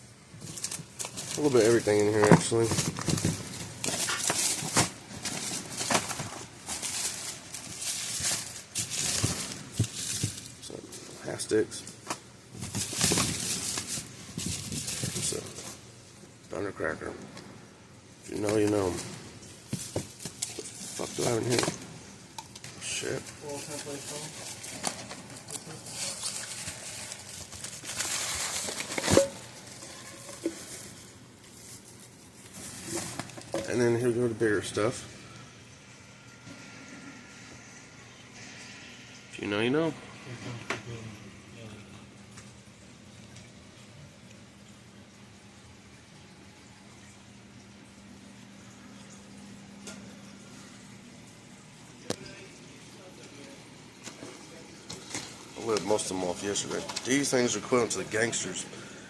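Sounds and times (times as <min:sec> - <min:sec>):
packages rustling and crinkling: 0:00.2 - 0:16.3, 0:18.2 - 0:35.0, 0:54.0 - 0:59.0
packages knocking together: 0:00.4 - 0:10.6, 0:12.5 - 0:15.6.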